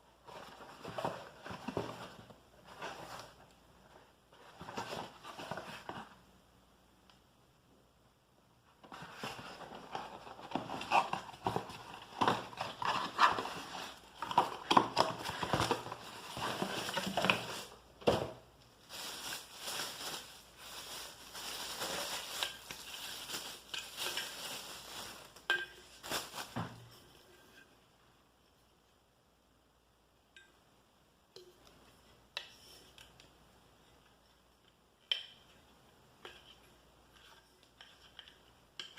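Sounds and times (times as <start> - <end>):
packaging crinkling and rustling: 8.8 - 27.0.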